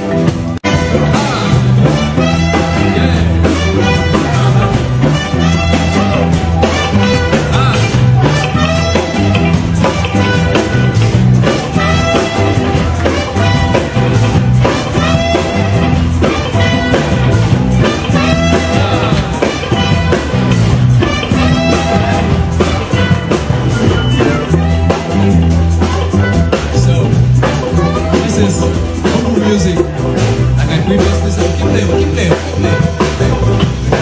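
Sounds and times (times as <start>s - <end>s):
band playing: 0.0s - 34.0s
repeating bass line: 0.0s - 34.0s.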